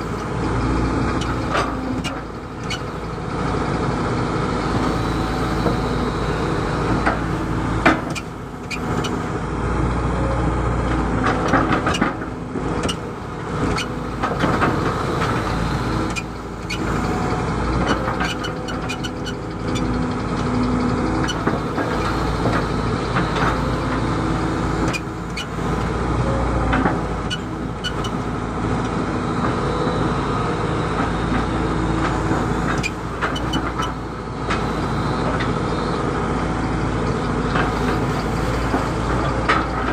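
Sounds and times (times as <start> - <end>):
excavator diesel engine running: 0.0 - 39.9
knocks and clatter of digging: 1.1 - 2.9, 6.9 - 9.1, 11.0 - 28.2, 30.9 - 35.6, 37.0 - 39.9.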